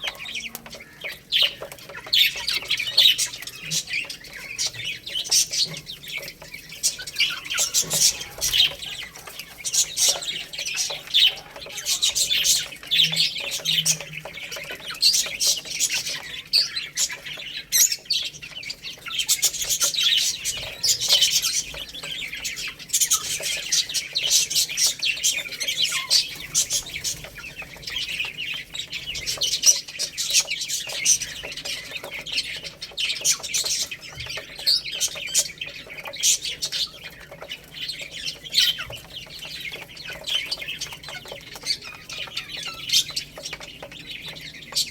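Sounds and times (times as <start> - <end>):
baby chicks peeping: 0.0 - 44.9.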